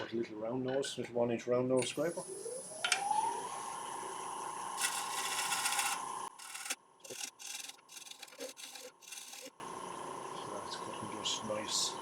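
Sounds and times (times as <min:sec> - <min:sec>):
lathe whine: 0:03.1 - 0:10.6
scraper cutting wood on lathe: 0:04.8 - 0:09.6.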